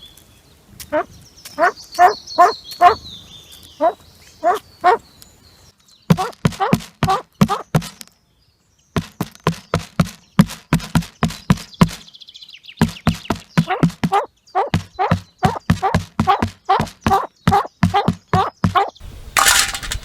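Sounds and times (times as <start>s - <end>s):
bird calling harsh notes: 0.9s - 3.0s, 13.6s - 20.0s.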